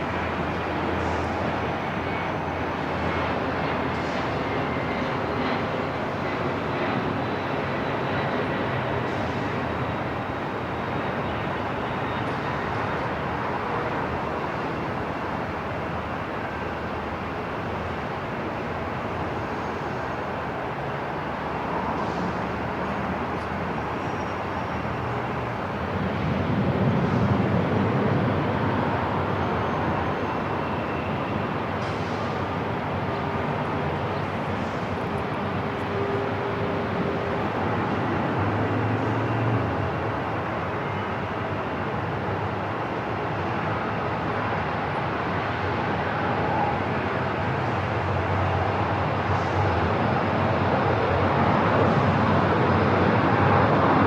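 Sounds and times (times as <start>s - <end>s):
steady wash of noise: 12.6s - 54.0s.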